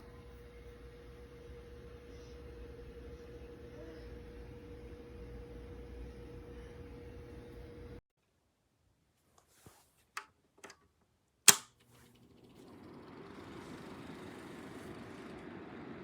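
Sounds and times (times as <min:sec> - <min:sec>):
switch clicks: 0:11.5 - 0:11.8.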